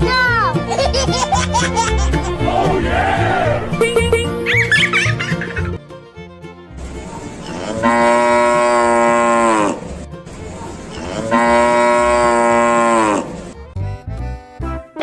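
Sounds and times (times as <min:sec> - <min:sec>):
cow mooing: 0:07.4 - 0:10.0, 0:10.9 - 0:13.4.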